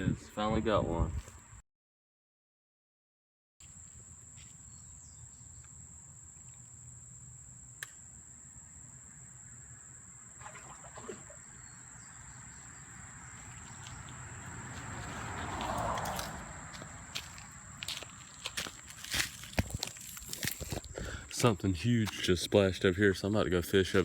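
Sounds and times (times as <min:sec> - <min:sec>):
insects trilling: 0:03.6 - 0:24.0
creek background noise: 0:10.1 - 0:24.0.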